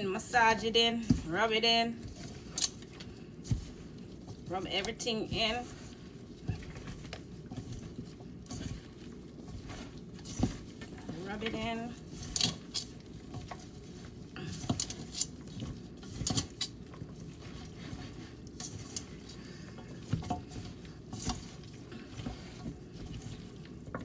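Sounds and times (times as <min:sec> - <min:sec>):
wet squishing of raw chicken: 0:02.0 - 0:04.5, 0:12.0 - 0:24.0.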